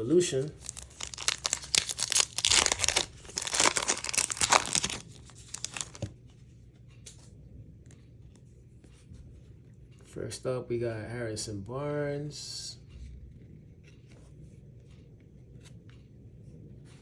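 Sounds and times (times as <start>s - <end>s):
wrapper tearing and crinkling: 0.4s - 6.1s.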